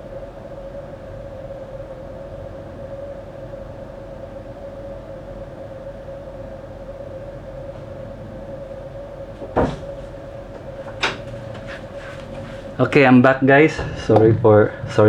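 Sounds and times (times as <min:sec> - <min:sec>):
steady hum: 0:00.0 - 0:15.0
sharp knocks: 0:09.4 - 0:10.0.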